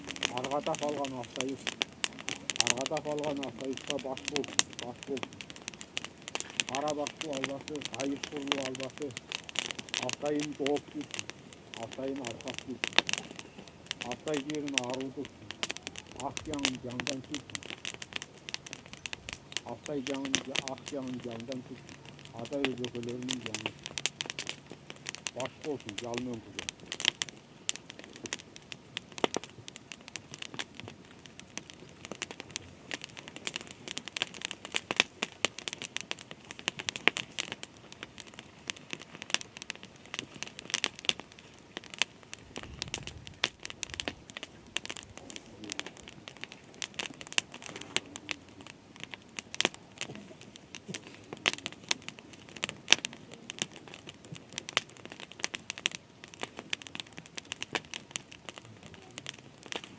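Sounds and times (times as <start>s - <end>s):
dense crackling and rustling: 0.0s - 59.9s.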